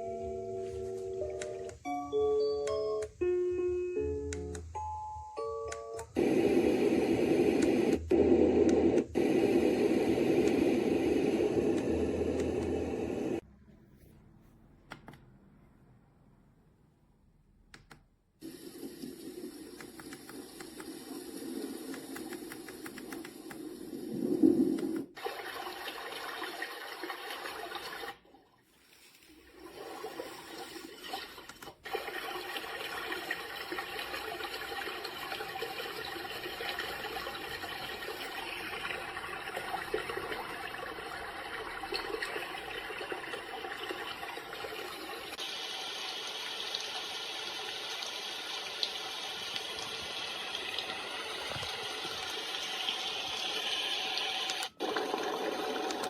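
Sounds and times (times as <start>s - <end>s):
white noise machine: 6.2s - 13.4s.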